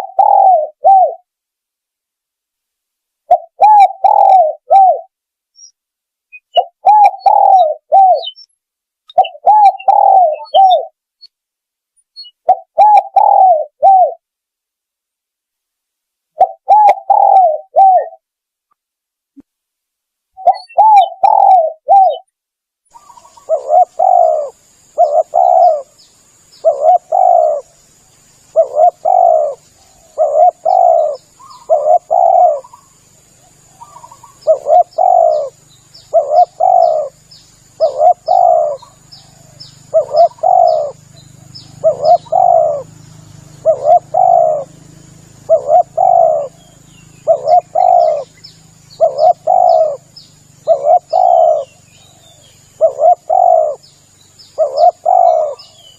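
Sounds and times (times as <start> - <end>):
dove cooing: 0.0 - 1.3, 3.3 - 5.1, 6.5 - 8.4, 9.1 - 11.0, 12.3 - 14.2, 16.4 - 18.2, 20.4 - 22.3, 22.9 - 26.0, 26.6 - 27.8, 28.5 - 53.9, 54.5 - 55.9
faint high chirps: 3.3 - 11.4, 12.0 - 14.2, 22.9 - 55.9.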